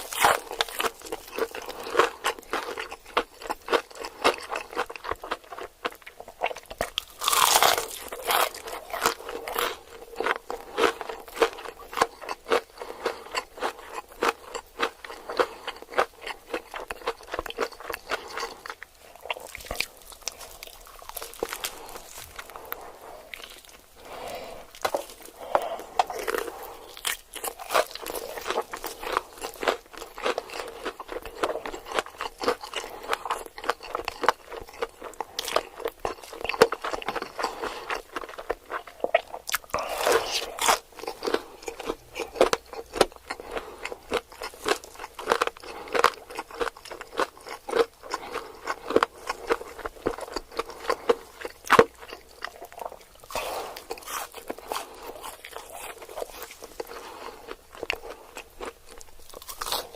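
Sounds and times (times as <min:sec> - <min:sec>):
crunchy chewing of fried food: 0:00.0 - 0:59.9.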